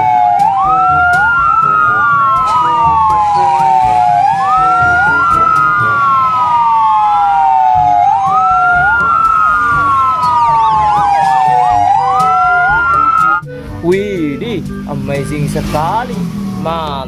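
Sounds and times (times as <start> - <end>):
toy siren wailing: 0.0 - 13.4.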